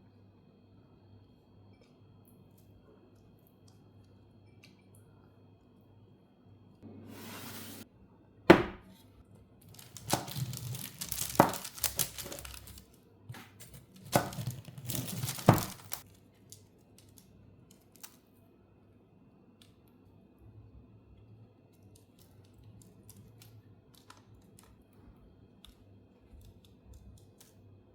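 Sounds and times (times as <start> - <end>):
bread crust crackling and tearing: 9.6 - 13.0, 13.7 - 18.2.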